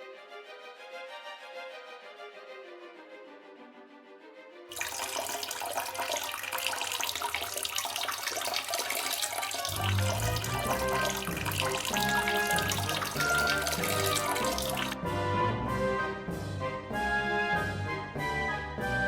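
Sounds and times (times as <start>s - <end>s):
water running hard: 4.7s - 15.0s.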